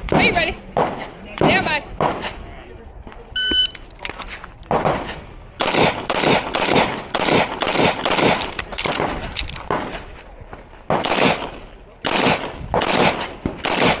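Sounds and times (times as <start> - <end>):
shot timer beep: 3.4 - 3.8
pistol shots: 4.7 - 10.0, 10.9 - 14.0.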